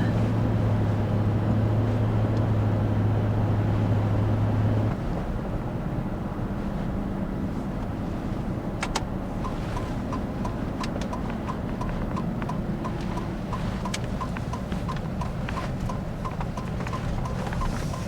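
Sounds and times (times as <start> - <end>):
road and engine rumble: 0.0 - 18.0
turn signal ticking: 8.6 - 18.0.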